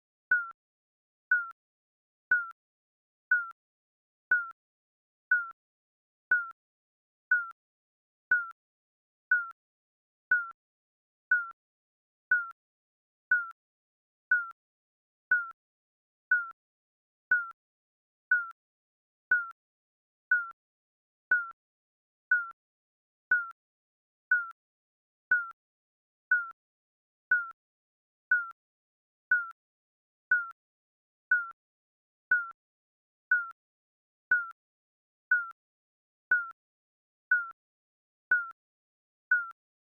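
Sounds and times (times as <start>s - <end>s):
timer beeping: 0.3s - 0.5s, 2.3s - 2.5s, 3.3s - 3.5s, 5.3s - 5.5s, 6.3s - 6.5s, 7.3s - 7.5s, 8.3s - 8.5s, 10.3s - 10.5s, 14.3s - 14.5s, 39.3s - 39.5s.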